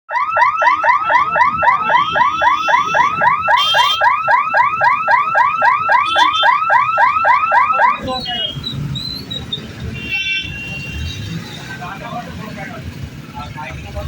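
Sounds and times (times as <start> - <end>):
level crossing siren whooping: 0.1 - 8.1.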